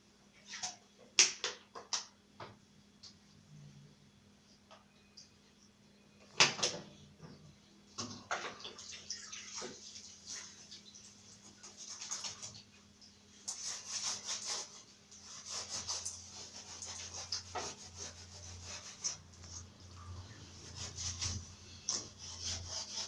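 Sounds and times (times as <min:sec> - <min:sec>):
brush scrubbing a grille: 0:09.6 - 0:12.7, 0:13.4 - 0:23.0.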